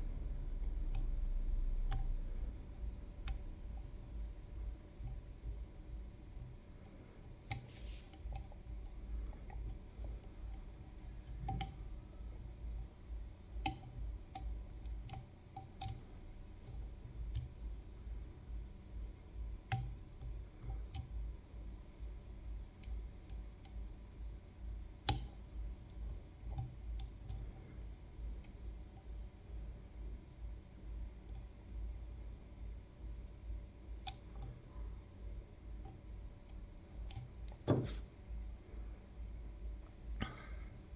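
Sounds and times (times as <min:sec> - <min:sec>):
lock pick clicking on pins: 0:13.6 - 0:17.6, 0:34.0 - 0:34.6, 0:35.8 - 0:38.1.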